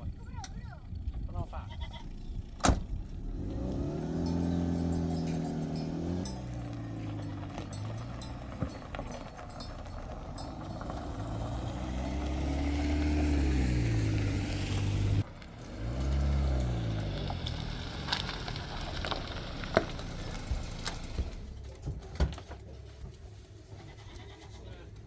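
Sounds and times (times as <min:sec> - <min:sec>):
vehicle engine running: 0:00.0 - 0:21.8.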